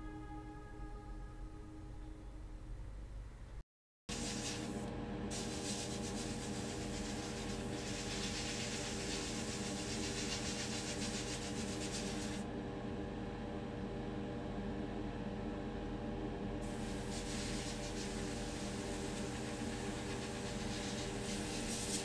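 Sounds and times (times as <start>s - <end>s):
airbrush spray hiss: 4.1s - 12.4s, 16.6s - 22.0s
small compressor humming: 4.1s - 12.4s, 16.6s - 22.0s.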